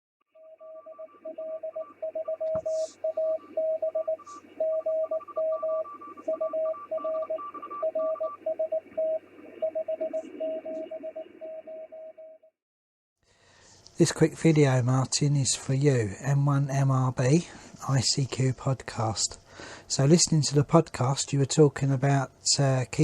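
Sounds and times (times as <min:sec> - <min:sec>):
morse code tone: 0:00.3 - 0:12.4
radio hiss: 0:01.2 - 0:11.0, 0:16.8 - 0:21.4.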